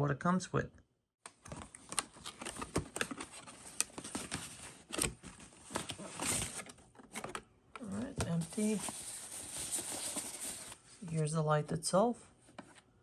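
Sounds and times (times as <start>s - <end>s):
cardboard and packaging rustling: 1.3s - 11.4s, 12.4s - 13.0s.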